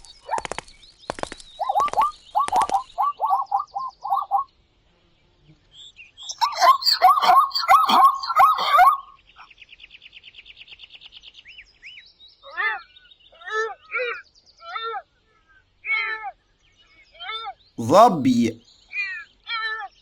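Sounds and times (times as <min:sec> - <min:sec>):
bird high trill: 0:06.3 - 0:09.1
zebra barking yelps: 0:06.3 - 0:09.1.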